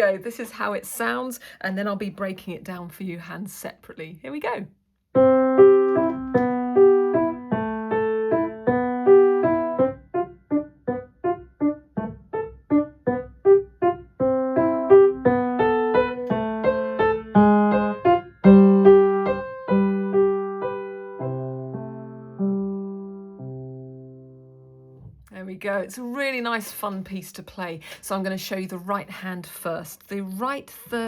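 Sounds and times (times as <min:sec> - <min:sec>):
solo piano piece: 0:05.1 - 0:25.3.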